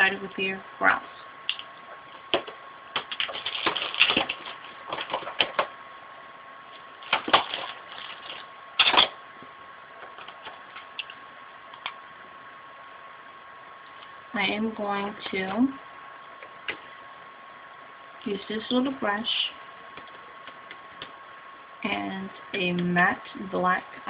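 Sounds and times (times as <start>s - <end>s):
makeup cases clicking and clattering: 2.4s - 5.7s, 7.0s - 9.2s.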